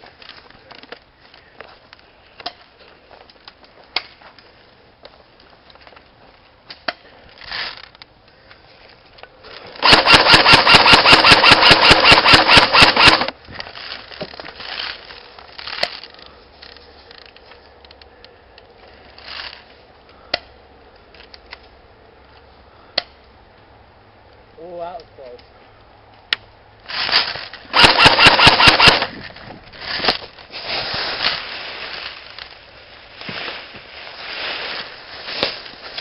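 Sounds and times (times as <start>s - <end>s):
airsoft gun firing rapidly: 9.8s - 13.3s, 27.7s - 29.2s.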